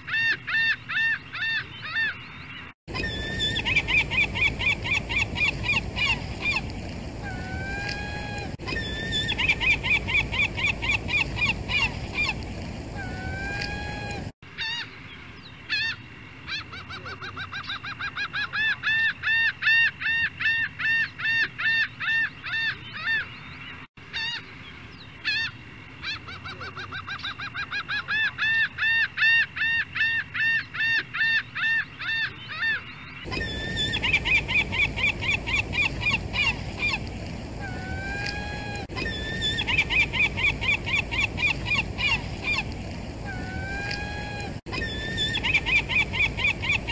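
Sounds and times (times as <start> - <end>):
gulls calling: 0.0 - 46.9.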